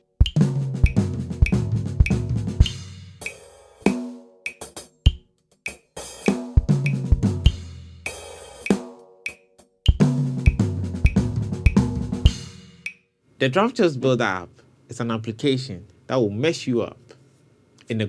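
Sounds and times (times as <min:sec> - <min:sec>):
kick drum: 0:00.2 - 0:02.8, 0:06.6 - 0:07.7, 0:09.9 - 0:12.4
snare drum strokes: 0:00.2 - 0:04.9, 0:05.7 - 0:13.0.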